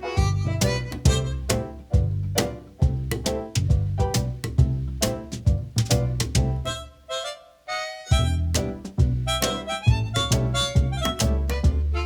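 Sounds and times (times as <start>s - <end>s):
reedy harmonica-like melody: 0.0s - 1.6s, 6.6s - 8.6s, 9.3s - 12.0s
bass and beat: 0.0s - 6.8s, 8.1s - 12.0s.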